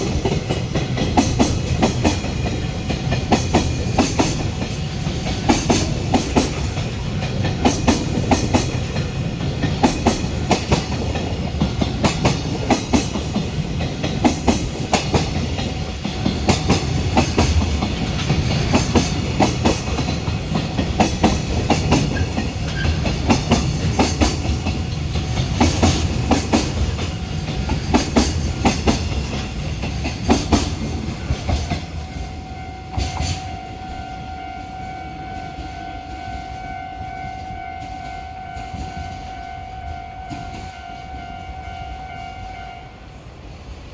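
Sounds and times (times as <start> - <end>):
train wheels clicking over rail joints: 0.0 - 33.6
low train rumble: 0.0 - 43.9.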